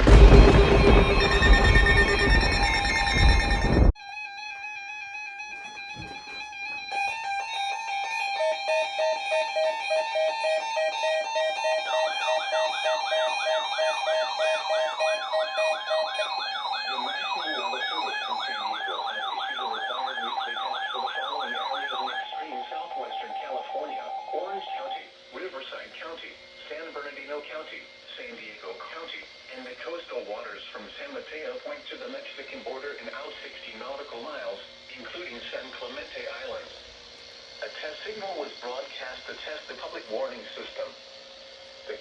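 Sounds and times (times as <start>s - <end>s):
pulsing electronic beep: 0.0s - 4.0s, 10.2s - 25.1s
steady electronic tone: 0.0s - 4.0s, 8.3s - 25.1s
warbling siren-like tone: 0.0s - 25.3s.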